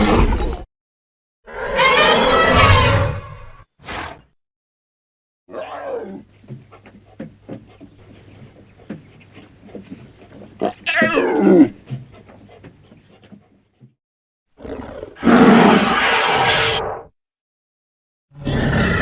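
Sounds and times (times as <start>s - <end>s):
creature call: 9.9s - 12.0s
loud creature cry falling in pitch: 10.8s - 11.7s.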